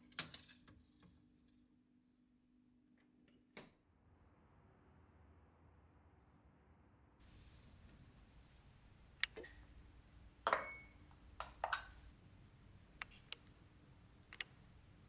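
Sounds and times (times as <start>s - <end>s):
kitchen utensils clinking: 10.4s - 12.1s.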